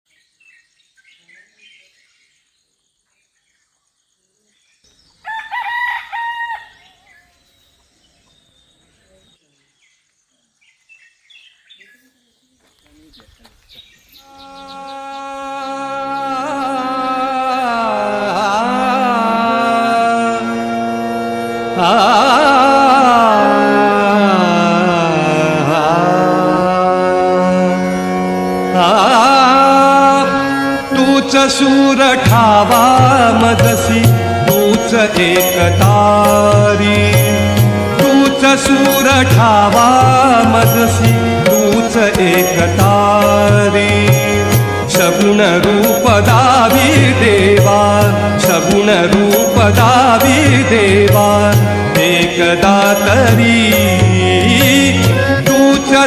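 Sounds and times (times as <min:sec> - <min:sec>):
small birds chirping: 0:00.1 - 0:05.4, 0:06.6 - 0:17.7
rooster crowing: 0:05.2 - 0:07.2
person singing with vibrato: 0:14.2 - 0:56.0
sustained accompanying notes: 0:14.2 - 0:56.0.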